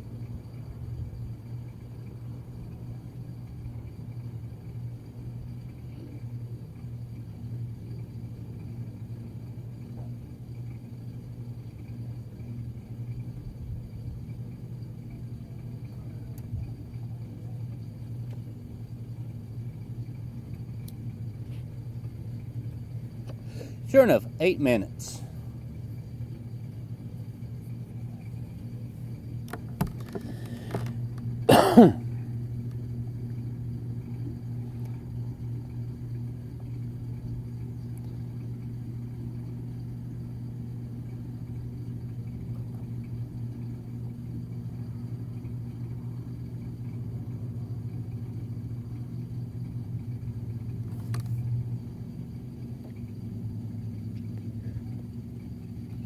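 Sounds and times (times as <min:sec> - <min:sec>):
washing machine humming: 0:00.0 - 0:56.0
person coughing: 0:31.5 - 0:32.0.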